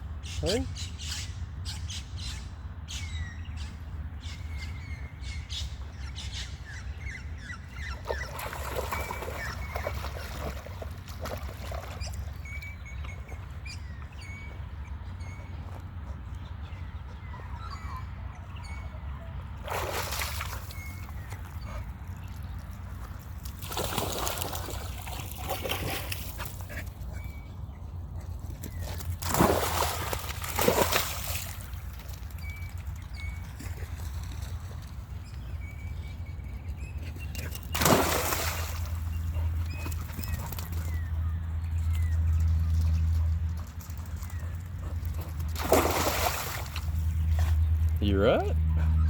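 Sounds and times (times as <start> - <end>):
birds whistling: 4.3 - 10.8
splashing through shallow water: 8.0 - 12.7, 19.6 - 26.8, 28.8 - 35.1, 37.4 - 41.0, 41.9 - 49.0.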